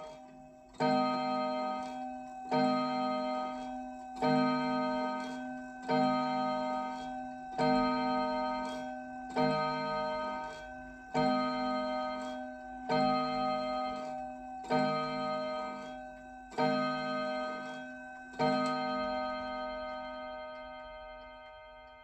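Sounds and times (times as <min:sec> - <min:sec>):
mantel clock striking: 0:18.4 - 0:22.0.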